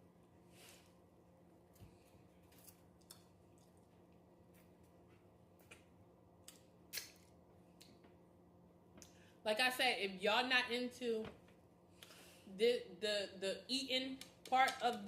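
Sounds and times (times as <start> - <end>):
lip smacks and mouth clicks: 5.6 - 8.0.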